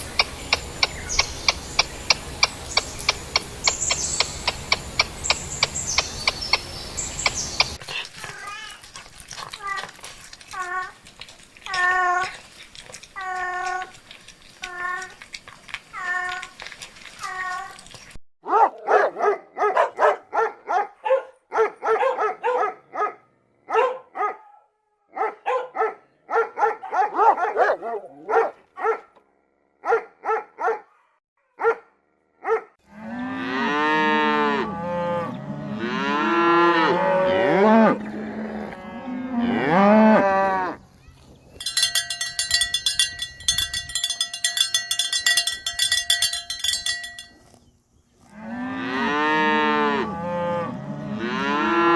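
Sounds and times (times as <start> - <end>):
cows mooing: 32.9 - 40.9, 48.2 - 51.9
cowbell ringing: 41.6 - 47.6.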